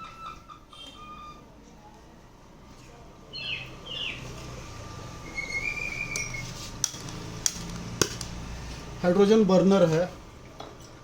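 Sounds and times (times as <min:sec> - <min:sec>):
small hard objects clinking: 0:06.2 - 0:08.4.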